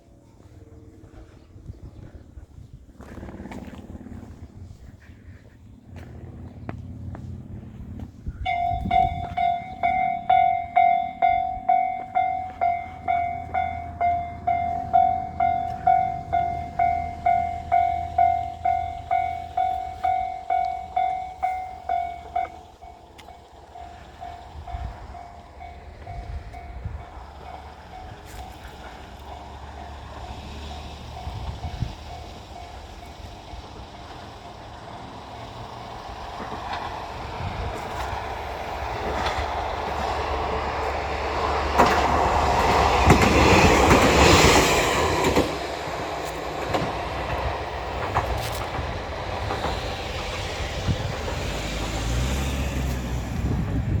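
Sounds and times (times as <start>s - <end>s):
level crossing bell clanging: 8.4s - 34.6s.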